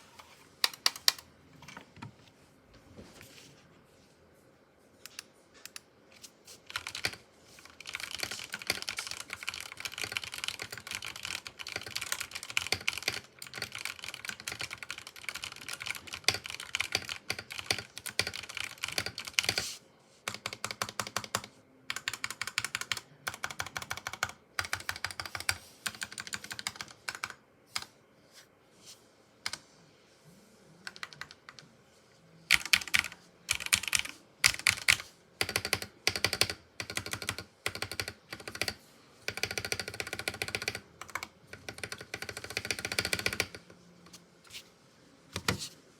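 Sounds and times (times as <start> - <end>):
mechanical keyboard typing: 0.6 - 1.3, 6.7 - 19.6, 20.3 - 27.9, 30.8 - 31.6, 32.5 - 43.6.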